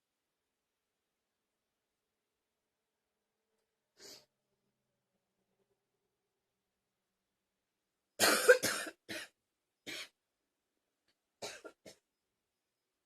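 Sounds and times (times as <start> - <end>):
person coughing: 8.2 - 10.2, 11.4 - 12.0.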